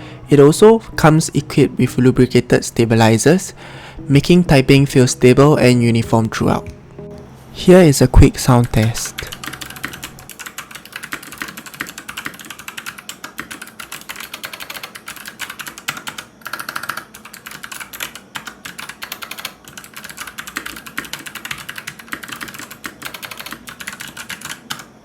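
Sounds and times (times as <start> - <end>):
clicky keyboard typing: 8.8 - 24.9.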